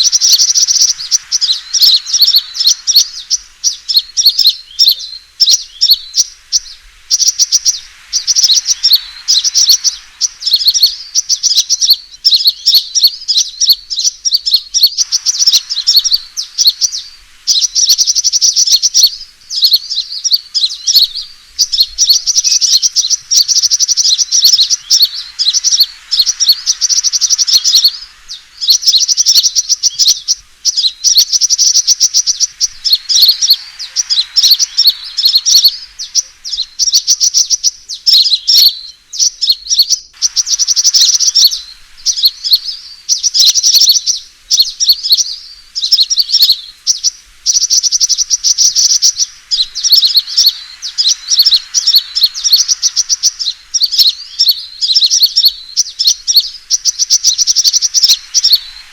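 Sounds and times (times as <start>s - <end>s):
birds twittering and chattering: 0.0s - 58.9s.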